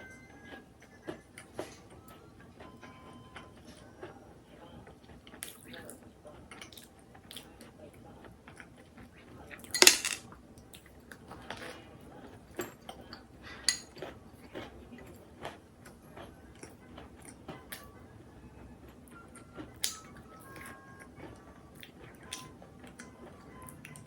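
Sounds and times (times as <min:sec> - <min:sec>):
dishes and cutlery clinking: 0:09.8 - 0:10.2, 0:13.6 - 0:14.1.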